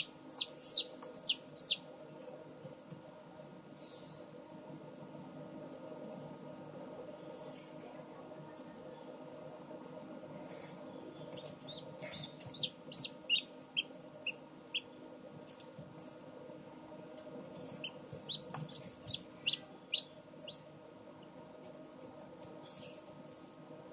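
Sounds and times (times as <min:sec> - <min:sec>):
chicks peeping: 0:00.0 - 0:01.9, 0:11.1 - 0:16.2, 0:17.4 - 0:21.4
incubator fan hum: 0:00.0 - 0:23.9.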